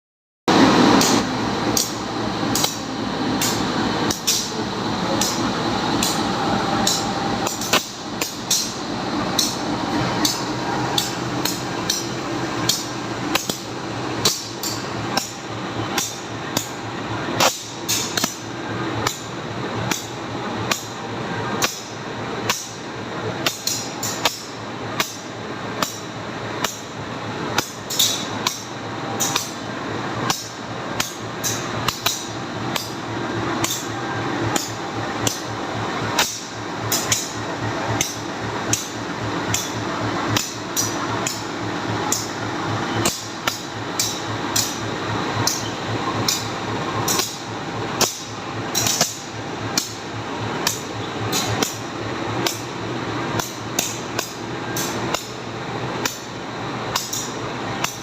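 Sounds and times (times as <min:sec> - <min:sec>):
locomotive hum: 0:00.5 - 0:58.0.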